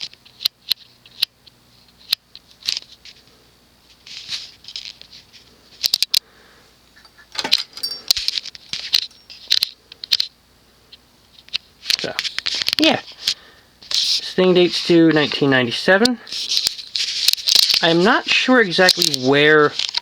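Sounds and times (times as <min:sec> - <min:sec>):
metallic jingling and rustling: 0:07.0 - 0:09.5, 0:16.3 - 0:17.8.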